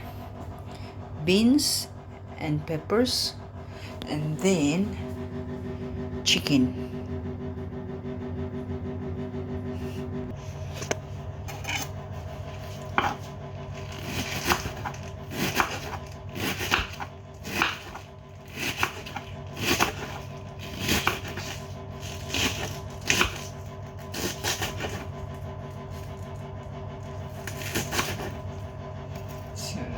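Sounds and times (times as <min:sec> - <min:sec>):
knife chopping cabbage on board: 0:10.8 - 0:11.9, 0:12.5 - 0:25.1, 0:27.3 - 0:28.4.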